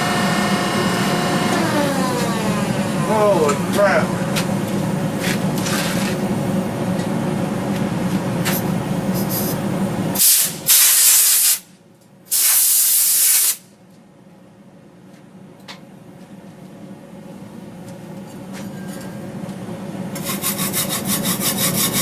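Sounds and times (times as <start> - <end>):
steady machine hum: 0.0 - 10.9, 13.6 - 22.0
loud hissing bursts: 10.2 - 11.7, 12.3 - 13.7.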